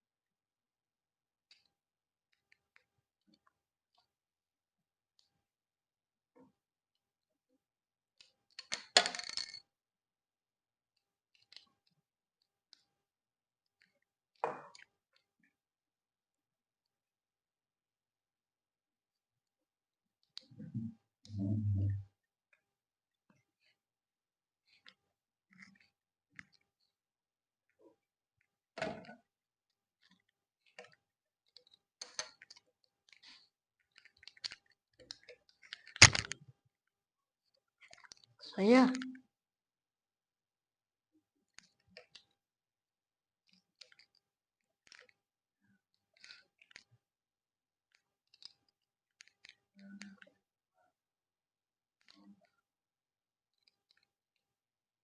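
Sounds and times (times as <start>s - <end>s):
model kit parts clicking and clinking: 8.6s - 9.7s, 36.0s - 36.4s
plastic parts clicking together: 35.9s - 36.4s.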